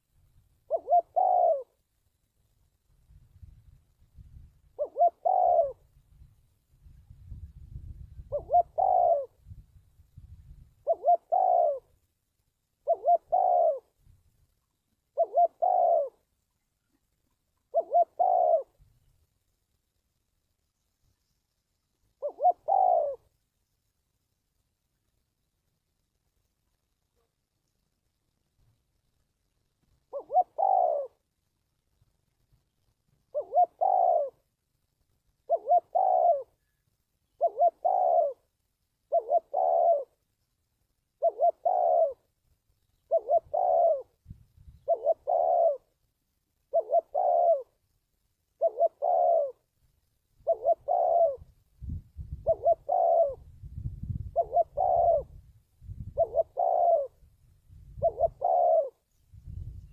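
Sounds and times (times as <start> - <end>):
dove cooing: 0.6 - 1.9, 4.6 - 6.1, 7.3 - 9.6, 10.7 - 12.0, 12.8 - 14.0, 15.0 - 16.4, 17.6 - 18.9, 22.1 - 23.4, 29.9 - 31.7, 33.1 - 34.6, 35.3 - 40.2, 41.2 - 42.3, 42.9 - 46.0, 46.6 - 47.9, 48.5 - 49.8, 50.4 - 59.9.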